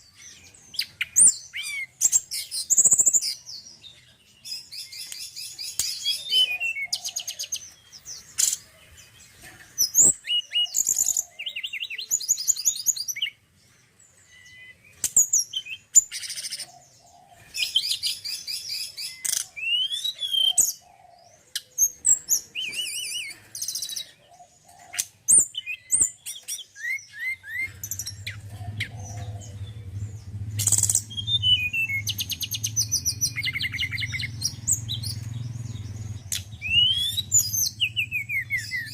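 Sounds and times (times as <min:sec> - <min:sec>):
bird singing trills and whistles: 0:00.0 - 0:13.4, 0:14.1 - 0:38.9
steady low hum: 0:27.6 - 0:38.9.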